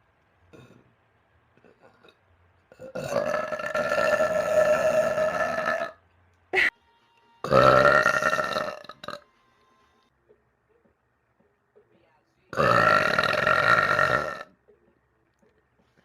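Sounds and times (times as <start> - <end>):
person burping: 0.5 - 0.8, 1.6 - 6.0, 7.5 - 9.2, 12.6 - 14.5.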